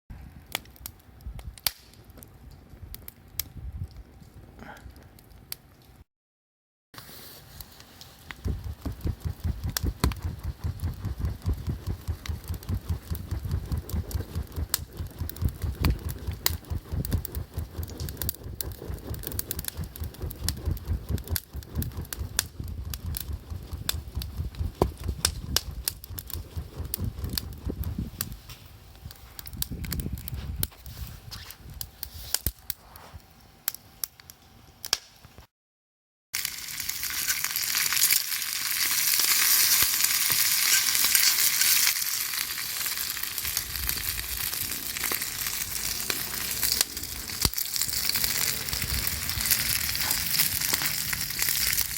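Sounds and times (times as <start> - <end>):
campfire crackling and popping: 0.4 - 4.3, 7.5 - 31.5, 36.4 - 51.9
food sizzling over fire: 7.0 - 28.5, 36.4 - 51.9
low rumble: 8.4 - 30.7, 43.5 - 51.9.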